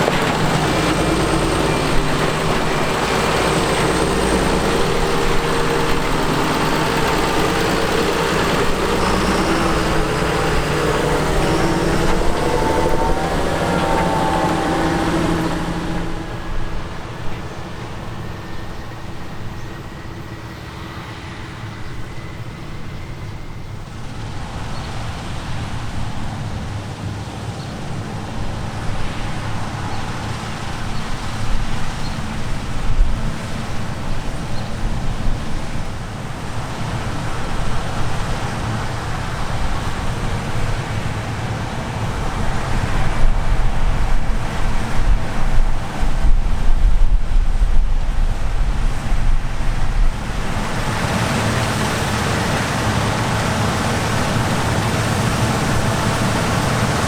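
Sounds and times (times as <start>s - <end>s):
diesel engine hum: 0.0s - 57.0s.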